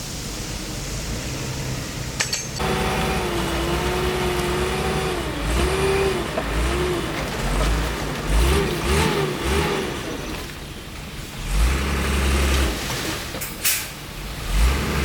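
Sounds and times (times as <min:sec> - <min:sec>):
diesel engine whining and rumbling: 0:00.0 - 0:15.0.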